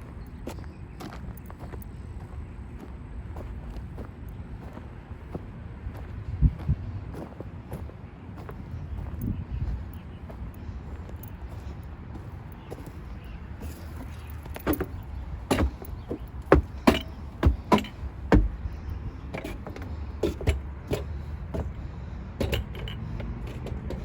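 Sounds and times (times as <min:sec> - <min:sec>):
sharp knocks and clicks: 0:14.6 - 0:21.8, 0:22.4 - 0:24.0.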